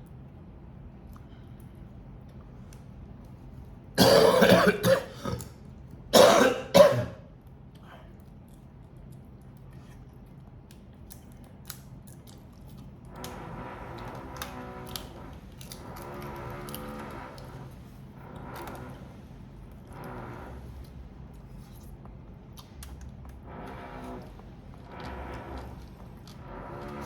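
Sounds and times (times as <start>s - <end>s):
person coughing: 4.0s - 5.5s, 6.1s - 7.3s.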